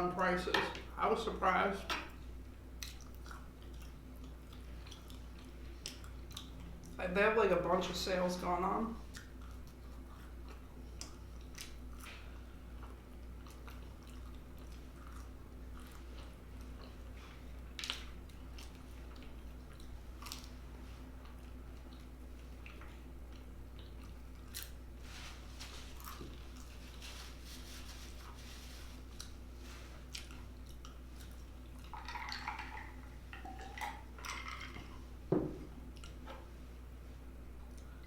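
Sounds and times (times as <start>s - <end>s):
person chewing crunchy food: 2.8s - 7.0s, 9.1s - 25.0s, 25.8s - 27.4s, 29.0s - 32.5s.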